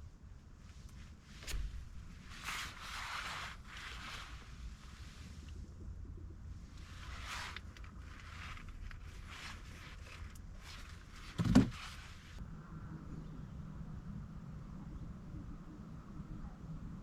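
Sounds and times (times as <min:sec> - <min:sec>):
rustling and handling noises: 0:00.5 - 0:05.6, 0:06.7 - 0:12.4.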